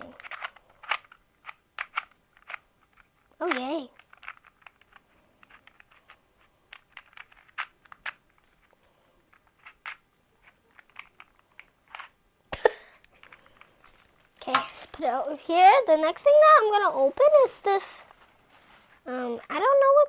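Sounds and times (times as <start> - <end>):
plastic cube clicks and clacks: 0.0 - 12.2.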